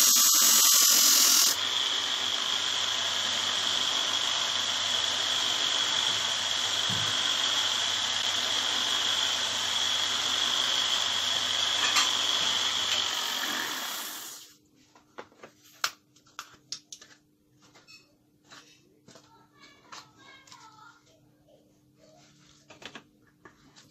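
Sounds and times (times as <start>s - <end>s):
knife-sharpening machine grinding: 0.0s - 14.4s.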